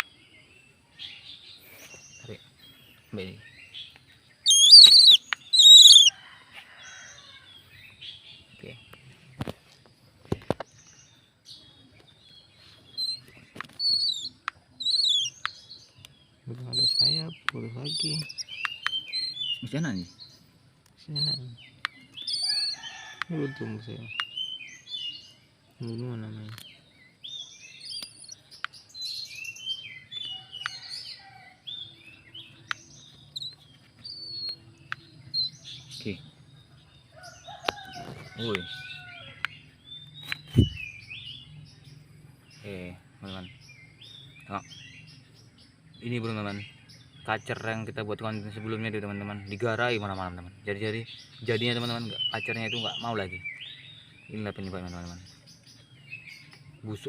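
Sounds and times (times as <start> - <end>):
bird chirps: 0.0 - 57.0
shrill downward bird calls: 4.4 - 6.2, 12.8 - 15.8, 16.7 - 20.1, 21.1 - 23.2.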